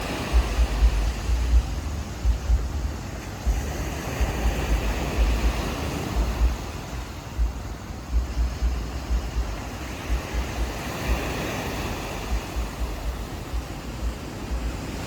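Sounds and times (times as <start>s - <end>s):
ocean surf on a beach: 0.0s - 15.0s
wind buffeting microphone: 0.0s - 15.0s.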